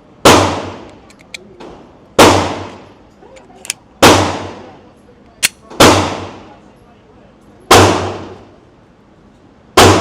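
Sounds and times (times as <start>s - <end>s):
pistol shots echoing: 0.2s - 0.9s, 2.2s - 2.8s, 4.0s - 4.6s, 5.4s - 6.5s, 7.7s - 8.4s, 9.8s - 10.0s.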